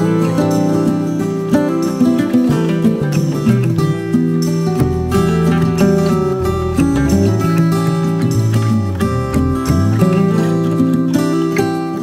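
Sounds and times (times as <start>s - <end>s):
plucked acoustic guitar: 0.0s - 12.0s
bass line: 2.9s - 11.3s.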